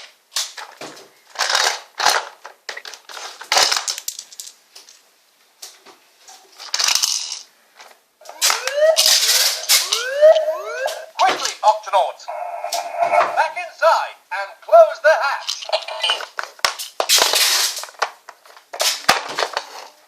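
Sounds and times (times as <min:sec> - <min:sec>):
rising alarm-like whoop: 0:08.3 - 0:11.2, 0:12.3 - 0:13.4.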